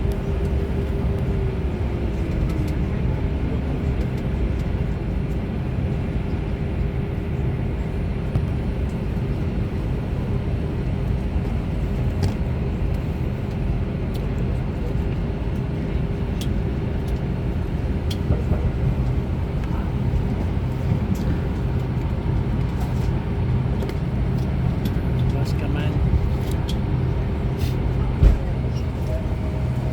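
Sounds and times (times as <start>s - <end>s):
vehicle engine running: 16.7s - 29.9s.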